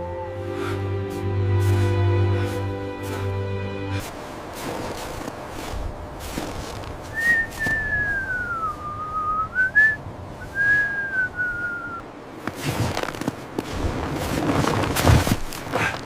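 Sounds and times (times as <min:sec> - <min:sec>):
noisy background with crackles: 0:04.0 - 0:16.0
high whistling tone: 0:07.1 - 0:12.0.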